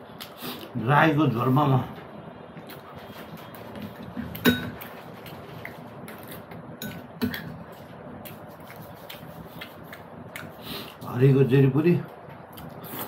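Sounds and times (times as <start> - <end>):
dishes and cutlery clinking: 4.3 - 4.9.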